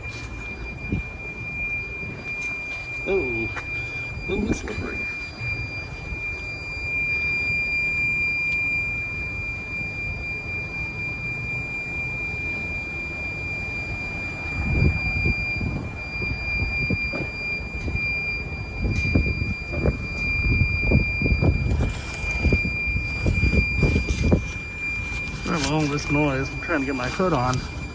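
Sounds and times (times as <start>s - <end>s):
thin steady high tone: 0.0s - 27.9s
wind buffeting microphone: 14.5s - 27.9s.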